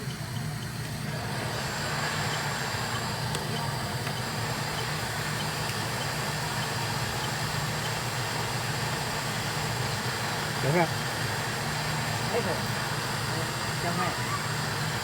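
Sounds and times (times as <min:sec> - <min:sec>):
fan motor hum with airy hiss: 0:00.0 - 0:15.0.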